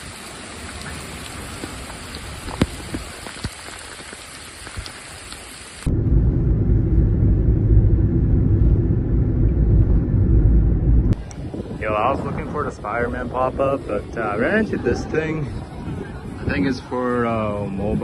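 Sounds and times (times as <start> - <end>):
rain hiss: 0.0 - 5.9
raindrop ticks: 0.4 - 5.9
deep rumble: 5.8 - 14.8.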